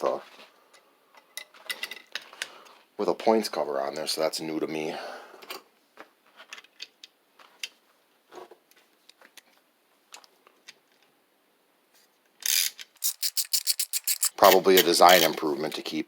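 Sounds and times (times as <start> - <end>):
small metal parts clicking: 12.4 - 15.3.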